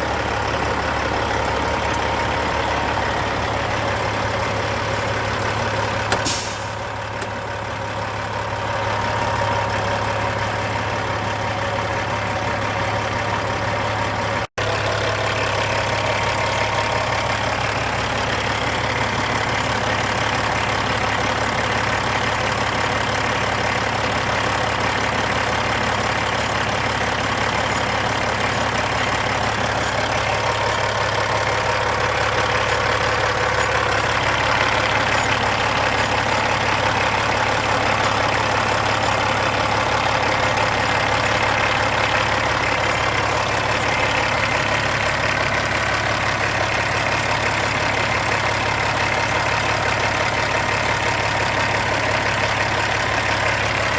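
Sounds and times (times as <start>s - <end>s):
diesel truck engine idling: 0.0s - 53.9s
short sharp air hiss: 6.2s - 6.8s.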